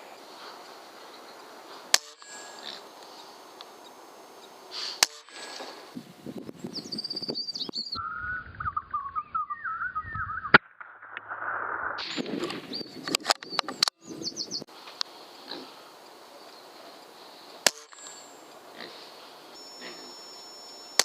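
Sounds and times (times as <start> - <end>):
air rifle shots: 1.9 - 2.6, 4.8 - 5.6, 17.6 - 18.2.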